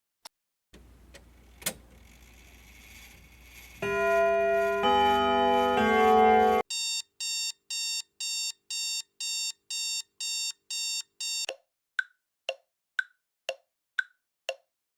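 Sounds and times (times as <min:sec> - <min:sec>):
digital alarm clock beeping: 0:03.8 - 0:11.5
clock ticking: 0:06.7 - 0:14.6.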